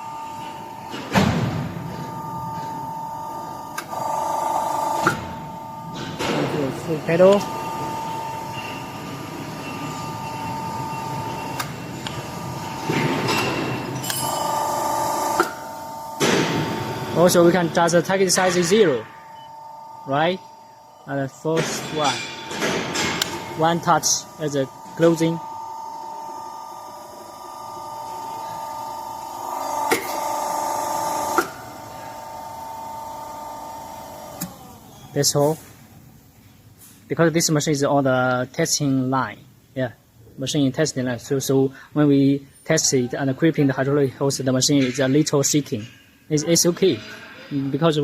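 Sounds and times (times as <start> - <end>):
hydraulic machine whine: 0.0 - 35.4
harsh buzzing: 2.0 - 34.4.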